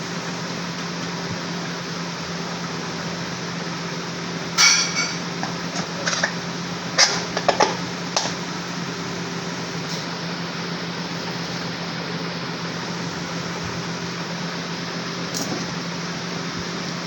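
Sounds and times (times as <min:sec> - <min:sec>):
fan whirring: 0:00.0 - 0:17.0
hard objects clinking: 0:04.6 - 0:06.4.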